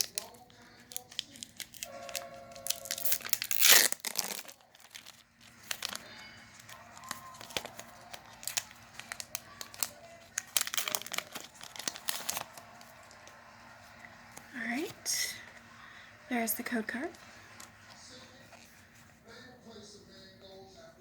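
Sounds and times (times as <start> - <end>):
foil wrapper tearing: 0.0 - 13.5
wrapper and cards crinkling: 0.0 - 15.6.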